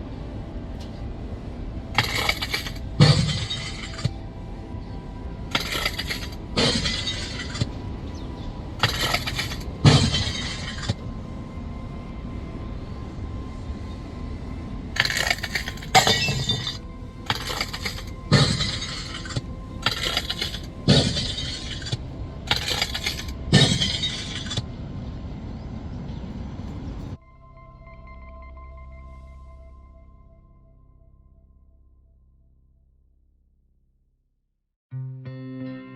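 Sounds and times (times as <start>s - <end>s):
low music bed: 0.0s - 33.6s.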